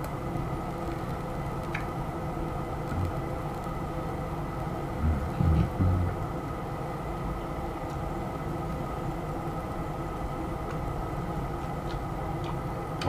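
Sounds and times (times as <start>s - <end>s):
motor-like hum: 0.0s - 13.0s.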